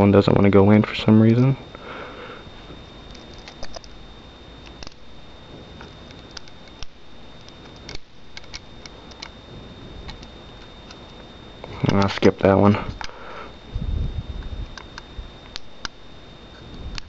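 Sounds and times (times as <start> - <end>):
screwdriver clicking on metal: 5.8 - 9.4.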